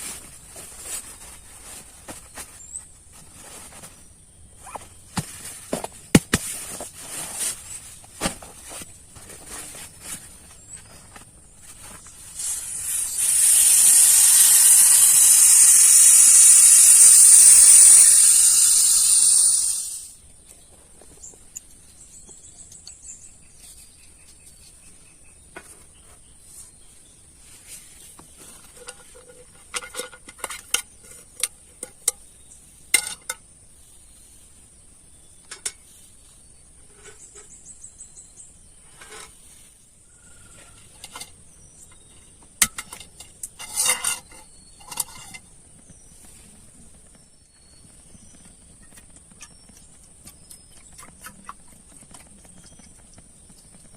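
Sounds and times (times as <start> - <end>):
loud steady hiss: 12.1 - 20.2
thin high-pitched whine: 12.2 - 20.2.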